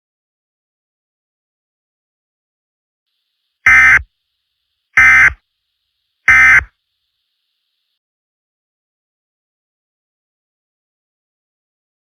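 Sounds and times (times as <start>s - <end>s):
electronic screeching data bursts: 3.7s - 4.0s, 5.0s - 5.4s, 6.3s - 6.7s.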